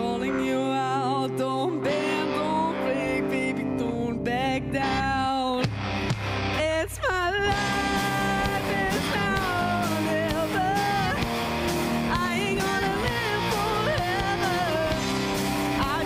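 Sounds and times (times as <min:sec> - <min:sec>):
bending lead guitar melody: 0:00.0 - 0:16.0
live rock band playing: 0:00.0 - 0:16.0.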